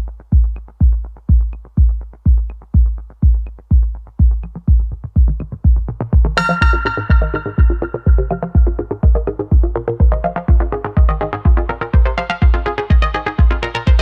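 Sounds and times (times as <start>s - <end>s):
bass line: 0.0s - 14.0s
kick drum: 0.0s - 14.0s
bright synth chords: 6.3s - 14.0s.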